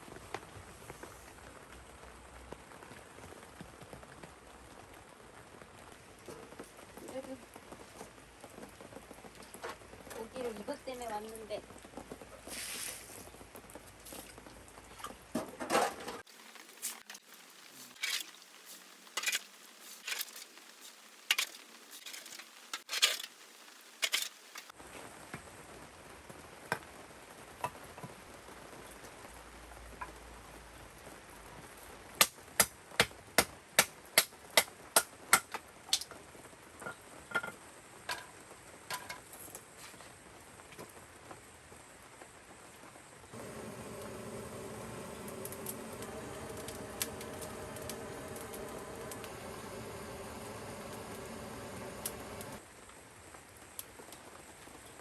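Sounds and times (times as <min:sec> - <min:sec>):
rain hiss: 0:12.4 - 0:13.7, 0:41.6 - 0:53.8.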